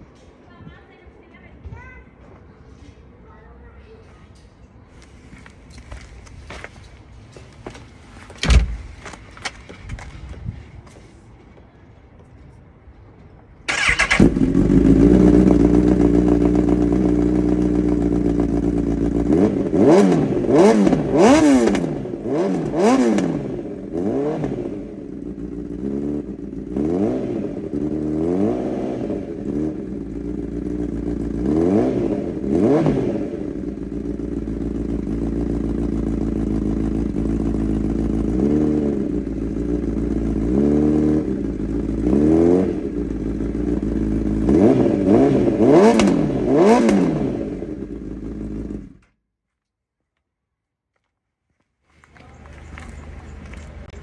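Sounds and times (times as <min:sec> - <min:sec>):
motorcycle engine starting: 0:13.6 - 0:49.2
motorcycle engine idling: 0:13.7 - 0:24.0, 0:24.6 - 0:26.8, 0:29.3 - 0:32.5, 0:33.1 - 0:49.0
motorcycle engine revving: 0:13.7 - 0:49.1.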